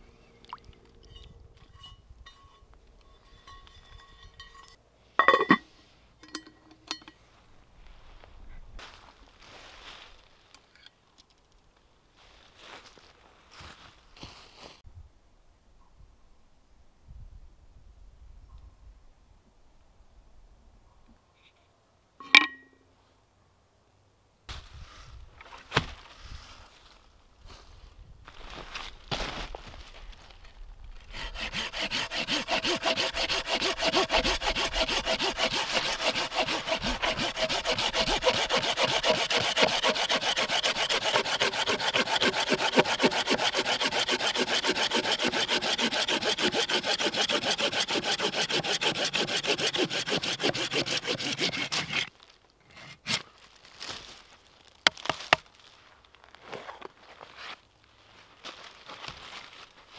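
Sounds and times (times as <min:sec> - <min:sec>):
hand saw cutting wood: 0:31.1 - 0:52.1.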